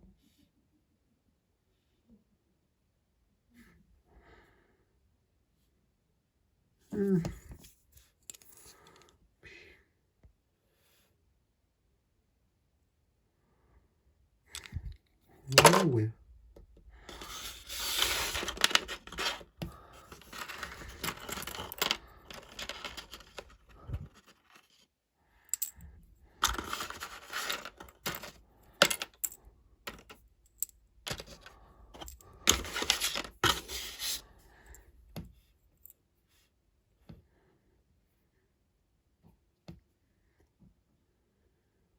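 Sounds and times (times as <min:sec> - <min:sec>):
plastic toy bricks rattling: 0:17.1 - 0:24.6, 0:26.4 - 0:30.2, 0:31.1 - 0:34.2.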